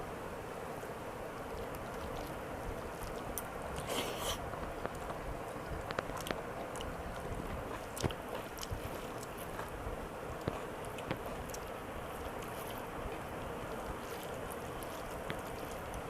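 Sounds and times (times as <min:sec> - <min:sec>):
person chewing food: 0:01.4 - 0:16.0.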